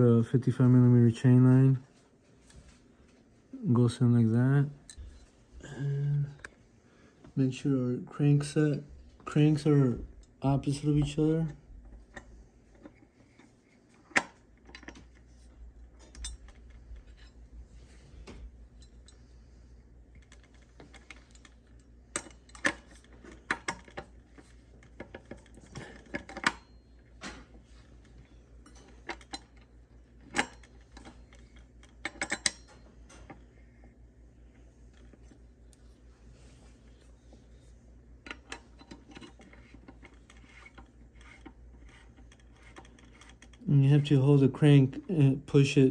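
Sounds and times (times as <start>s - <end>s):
faint low hum: 0.0s - 45.9s.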